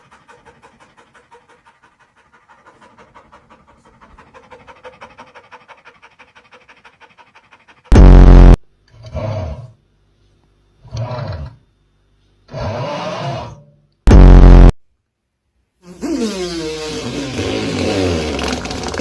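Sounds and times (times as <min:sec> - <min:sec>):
dog panting: 0:00.0 - 0:07.9
loud buzzy blast: 0:07.9 - 0:08.6, 0:14.1 - 0:14.7.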